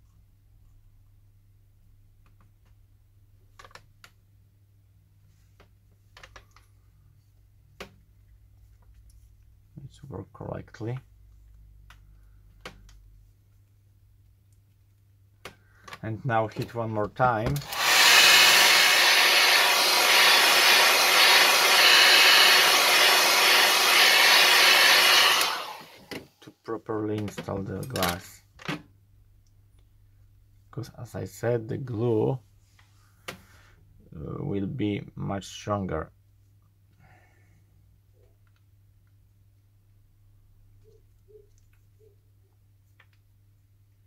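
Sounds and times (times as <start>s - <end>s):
hair dryer blowing: 17.6s - 26.2s.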